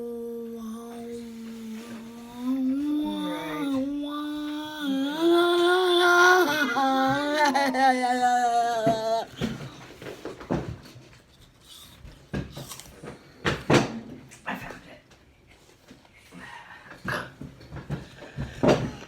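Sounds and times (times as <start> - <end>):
person humming wordless held notes: 0.0 - 9.7.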